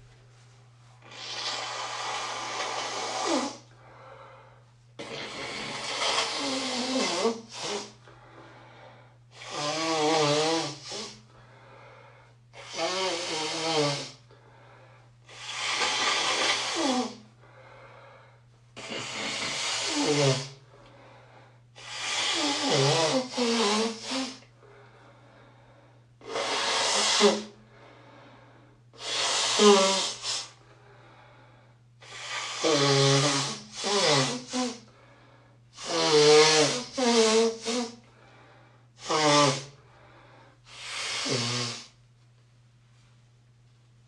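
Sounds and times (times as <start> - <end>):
steady low hum: 0.0 - 13.3, 13.9 - 44.0
nose being blown hard: 1.0 - 3.8, 5.0 - 8.1, 9.3 - 11.3, 12.5 - 14.3, 15.2 - 17.4, 18.8 - 21.2, 21.8 - 24.5, 26.2 - 27.6, 28.9 - 30.6, 32.0 - 34.9, 35.7 - 38.1, 39.0 - 39.8, 40.6 - 42.0.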